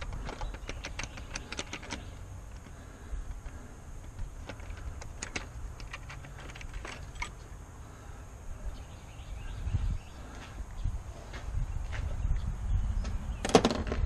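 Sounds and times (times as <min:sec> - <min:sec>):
tools clicking on metal parts: 0:00.0 - 0:02.7, 0:04.0 - 0:07.4.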